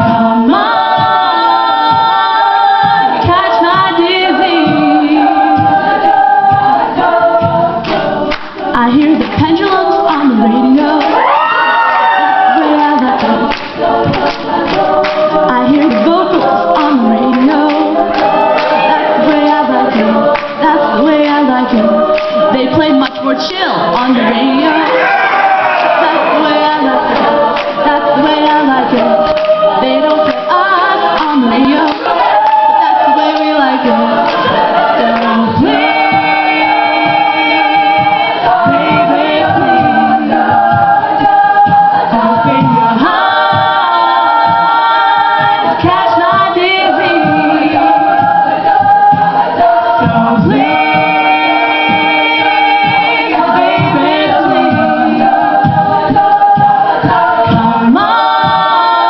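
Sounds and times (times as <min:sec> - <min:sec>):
choir singing a cappella: 0:00.0 - 0:59.0.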